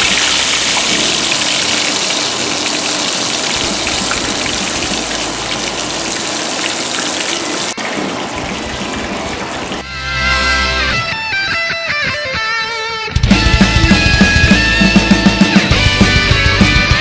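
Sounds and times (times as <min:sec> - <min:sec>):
meat sizzling in hot oil: 0:00.0 - 0:07.8.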